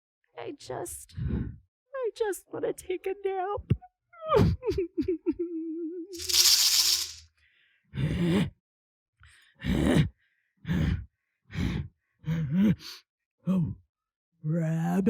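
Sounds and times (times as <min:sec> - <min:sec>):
rattling hissing burst: 0:06.2 - 0:07.2.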